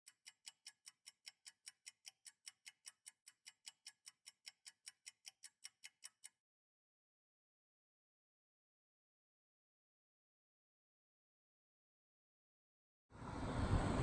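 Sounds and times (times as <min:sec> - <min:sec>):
faint fast ticking: 0:00.0 - 0:06.3.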